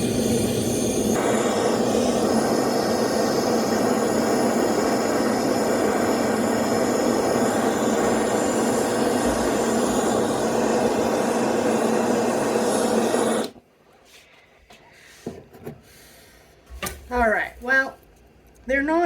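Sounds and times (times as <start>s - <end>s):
torch flame jet: 0.0s - 13.6s.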